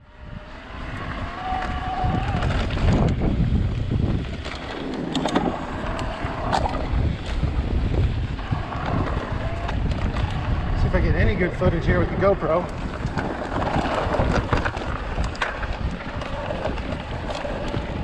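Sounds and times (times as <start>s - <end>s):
electric bike motor whine: 0.0s - 11.0s
wind rumble on microphone: 0.0s - 18.0s
bike clicks and knocks: 1.4s - 10.7s, 12.6s - 18.0s.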